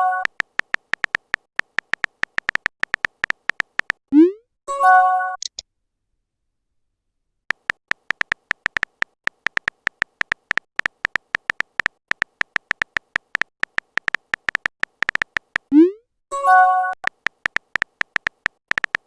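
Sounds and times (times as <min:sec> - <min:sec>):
phone keyboard typing clicks: 0:00.0 - 0:04.0, 0:07.5 - 0:15.7, 0:17.0 - 0:19.0.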